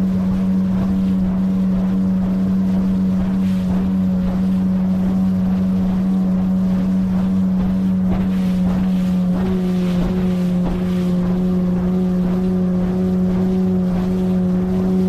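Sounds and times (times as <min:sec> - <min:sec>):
outboard motor drone: 0:00.0 - 0:15.0.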